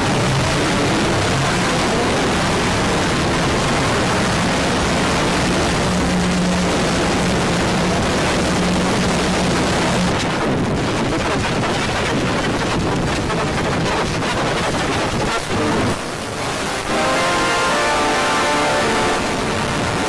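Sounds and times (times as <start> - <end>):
harsh static alarm noise: 0.0 - 10.2, 15.2 - 20.0
steady low hum: 0.0 - 10.8.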